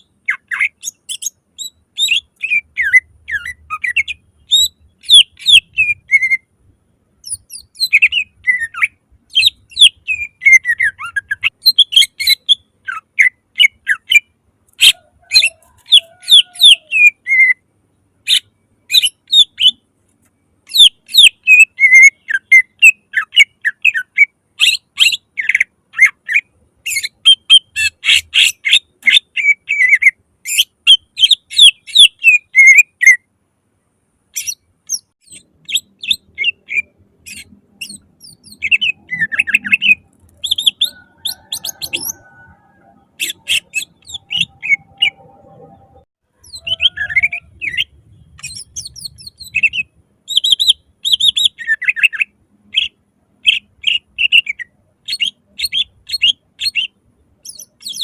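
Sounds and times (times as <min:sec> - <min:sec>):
bird singing chirps and whistles: 0:00.0 - 0:06.5, 0:07.2 - 0:17.6, 0:18.3 - 0:19.8, 0:20.7 - 0:33.3, 0:34.4 - 0:45.3, 0:46.4 - 0:58.0.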